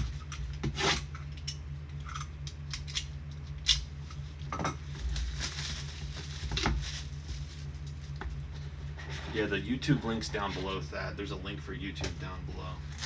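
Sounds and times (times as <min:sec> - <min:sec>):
steady low hum: 0:00.0 - 0:13.0
plastic and cardboard handling: 0:04.9 - 0:09.5.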